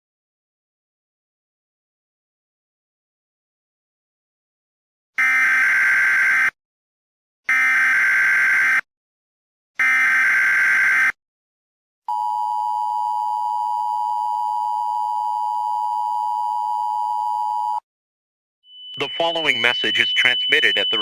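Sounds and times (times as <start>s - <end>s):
screeching data tones: 18.7s - 21.0s
two-tone attention signal: 18.7s - 21.0s.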